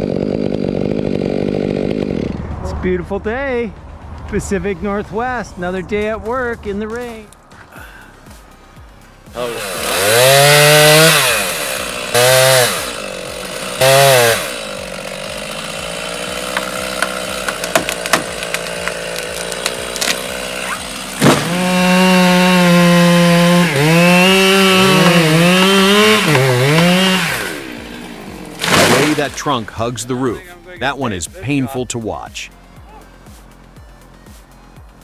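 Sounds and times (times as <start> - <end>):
chainsaw engine revving: 0.0 - 2.7, 9.3 - 31.2.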